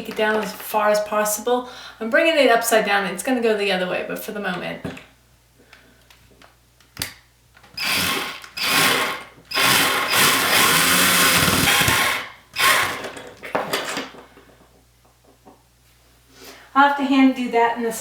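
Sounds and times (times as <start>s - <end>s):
electric drill driving a screw: 7.8s - 13.2s.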